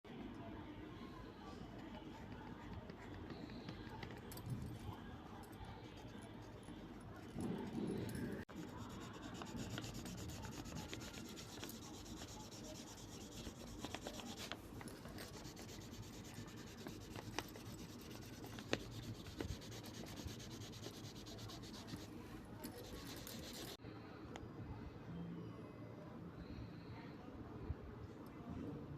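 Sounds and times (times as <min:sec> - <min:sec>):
drawing tool scratching paper: 0:08.5 - 0:22.1, 0:22.8 - 0:23.8.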